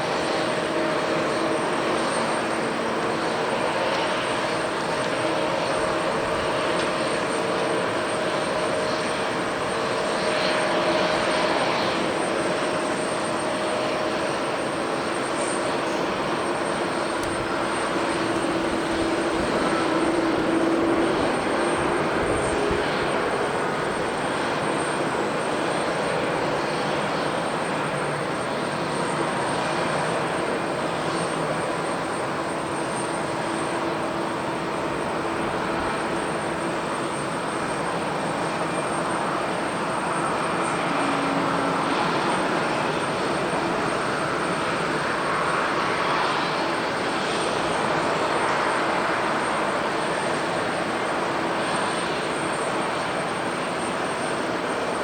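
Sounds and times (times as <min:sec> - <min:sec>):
jet engines rushing: 0:00.0 - 0:55.0.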